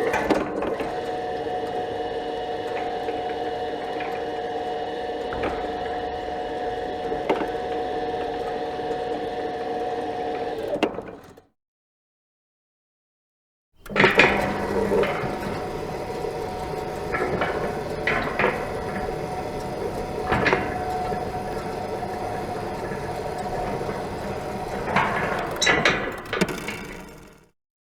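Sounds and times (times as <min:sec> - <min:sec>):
gate motor humming: 0:00.1 - 0:11.2, 0:13.8 - 0:27.5
gate hardware clanking: 0:13.8 - 0:27.4.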